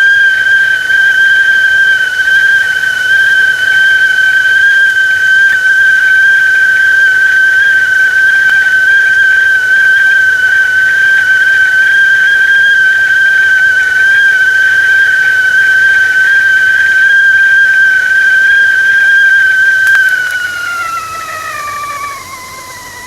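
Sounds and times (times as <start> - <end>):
kettle whistling: 0.0 - 23.0.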